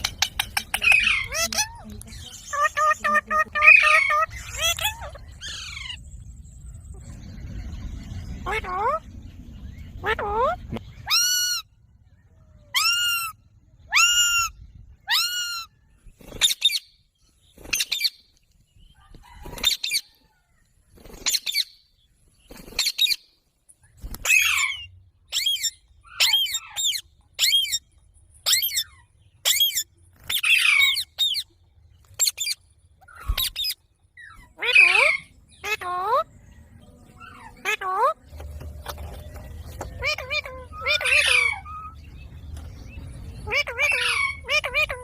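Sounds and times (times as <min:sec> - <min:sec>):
parakeet squawking: 0:00.0 - 0:06.0, 0:08.4 - 0:09.0, 0:10.0 - 0:11.6, 0:24.2 - 0:27.8, 0:32.2 - 0:36.3, 0:37.2 - 0:38.2, 0:39.8 - 0:42.0, 0:43.4 - 0:45.0.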